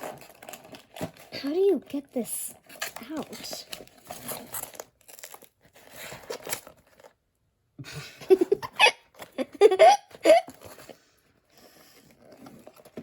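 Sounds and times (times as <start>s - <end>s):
cardboard and plastic rustling: 0.0s - 7.4s, 10.2s - 13.0s.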